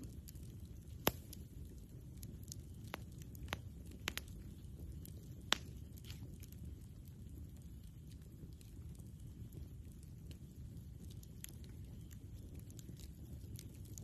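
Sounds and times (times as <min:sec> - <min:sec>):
campfire crackling: 0:00.0 - 0:14.0
low steady rumble: 0:00.0 - 0:14.0
sharp pops and snaps: 0:00.3 - 0:01.5, 0:02.2 - 0:06.6.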